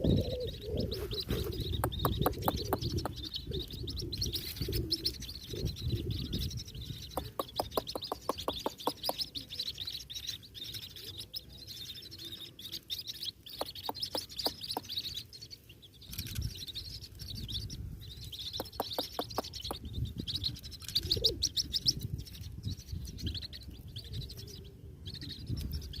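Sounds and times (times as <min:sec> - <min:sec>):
chick peeping: 0:00.0 - 0:26.0.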